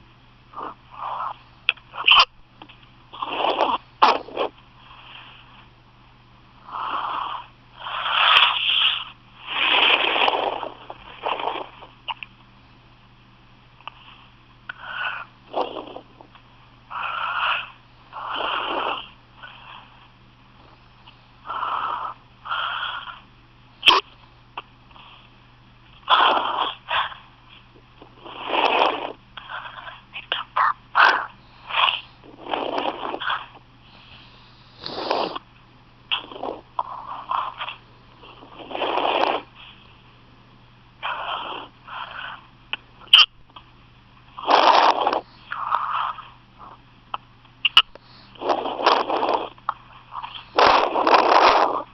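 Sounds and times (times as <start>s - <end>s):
person hiccuping: 23.9s - 24.1s
person breathing wheezily: 31.1s - 35.4s.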